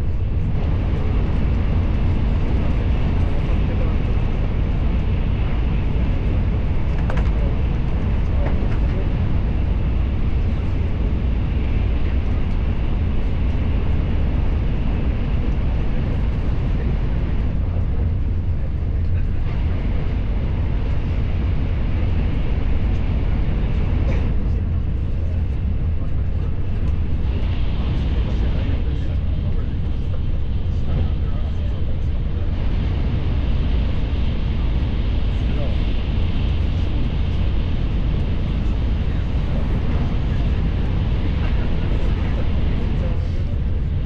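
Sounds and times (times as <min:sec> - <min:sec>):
faint voices: 0:00.0 - 0:44.0
vehicle rumble and hiss: 0:00.0 - 0:44.0.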